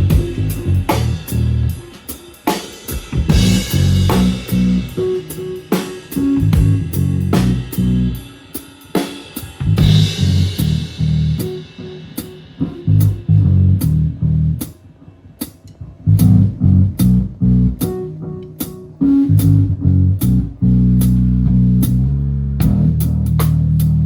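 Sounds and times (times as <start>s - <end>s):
electric bass guitar: 0.0s - 1.8s, 3.3s - 5.6s, 6.2s - 8.2s, 9.7s - 11.6s, 12.6s - 14.7s, 15.9s - 24.0s
drum and cymbal hits: 0.0s - 14.0s.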